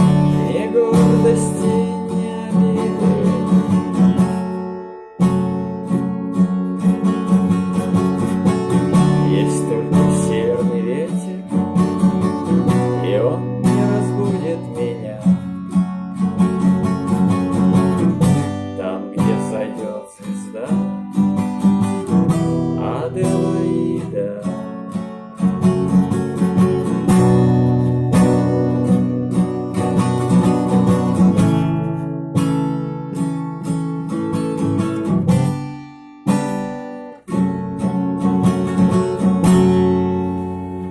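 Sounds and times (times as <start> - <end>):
acoustic guitar chords: 0.0 - 40.9.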